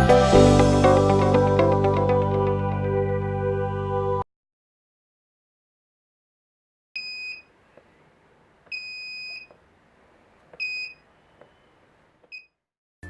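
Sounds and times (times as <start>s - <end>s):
high alarm buzzer beeps: 7.0s - 7.5s, 8.7s - 9.5s, 10.6s - 11.7s.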